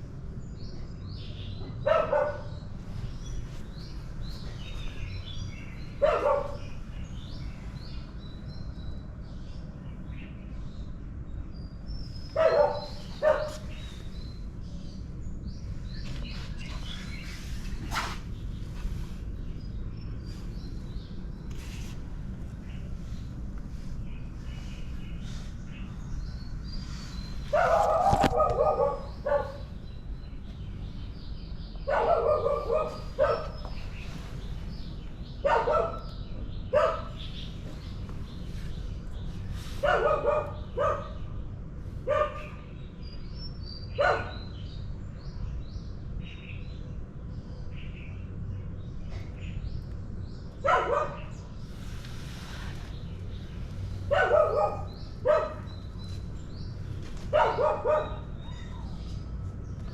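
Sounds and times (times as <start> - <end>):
low background hum: 0.0 - 59.9
dog barking: 1.8 - 2.6, 6.0 - 6.8, 12.3 - 13.8, 27.5 - 29.7, 31.8 - 33.8, 35.4 - 37.2, 39.8 - 41.3, 42.0 - 42.6, 43.9 - 44.5, 50.6 - 51.4, 54.1 - 55.8, 57.3 - 58.8.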